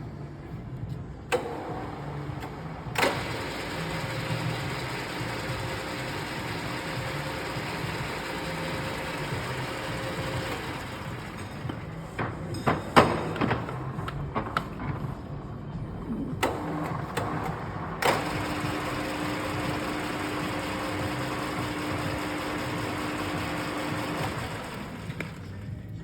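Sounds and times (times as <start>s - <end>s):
control clicks and knocks: 1.3s - 4.2s, 16.3s - 19.4s
milling machine humming: 1.3s - 12.7s, 16.0s - 26.0s
loud clunk: 11.0s - 15.3s.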